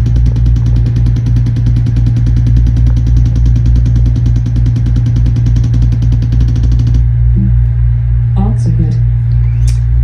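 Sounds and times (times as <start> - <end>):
adjusting instrument tapping rapidly: 0.0 - 7.0
low hum: 0.0 - 10.0.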